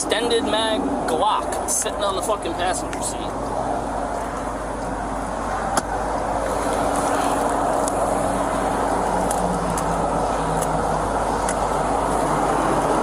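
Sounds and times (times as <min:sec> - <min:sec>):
car road and engine noise: 0:00.0 - 0:13.0.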